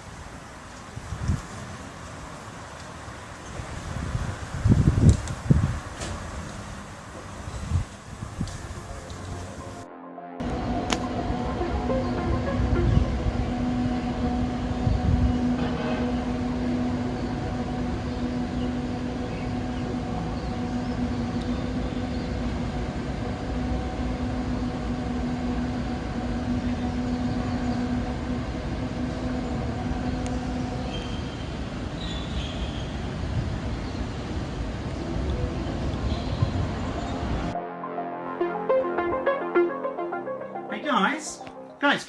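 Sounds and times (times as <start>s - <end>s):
low droning hum: 8.6s - 31.9s.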